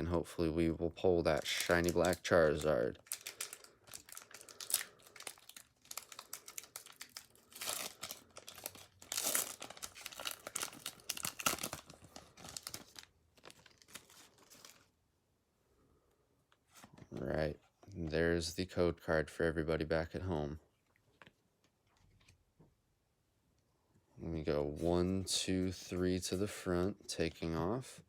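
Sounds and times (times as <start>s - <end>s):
foil wrapper crinkling and tearing: 1.2s - 14.9s.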